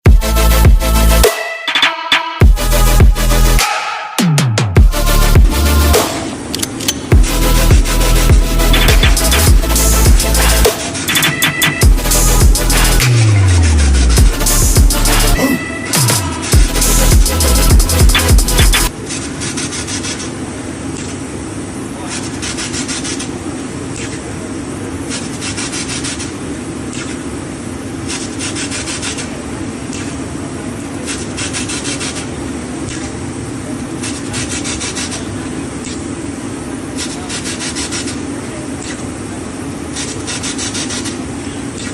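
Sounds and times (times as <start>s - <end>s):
steady low hum: 0.0s - 1.4s, 2.4s - 3.6s, 4.7s - 41.9s
abrasive rubbing strokes: 7.1s - 20.4s.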